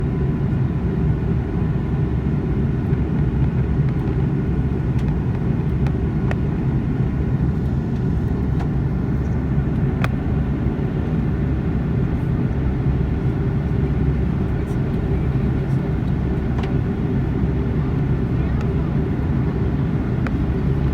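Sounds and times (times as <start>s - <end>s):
jet airliner cabin drone: 0.0s - 20.9s.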